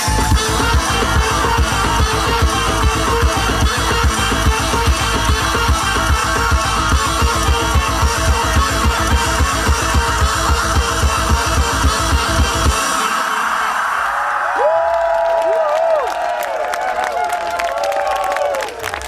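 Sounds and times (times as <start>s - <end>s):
electronic dance music: 0.0s - 14.8s.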